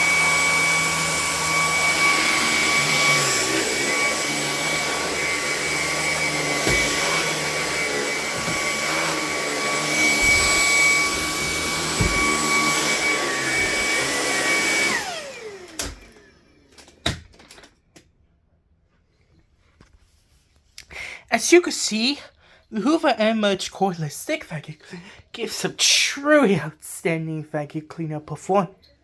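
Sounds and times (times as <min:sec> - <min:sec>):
vacuum cleaner motor whine: 0:00.0 - 0:17.0
dull knocks: 0:10.2 - 0:12.4.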